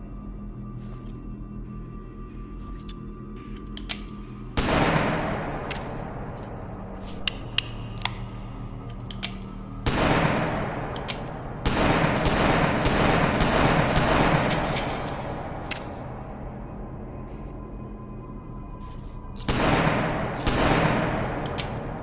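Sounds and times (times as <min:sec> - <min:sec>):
gunshots with echo: 0:04.6 - 0:06.3, 0:09.8 - 0:16.0, 0:19.5 - 0:22.0.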